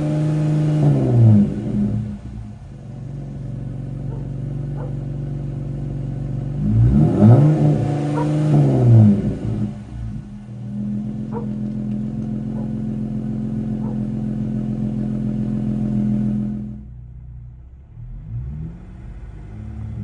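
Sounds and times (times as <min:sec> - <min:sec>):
engine running through exhaust: 0:00.0 - 0:20.0.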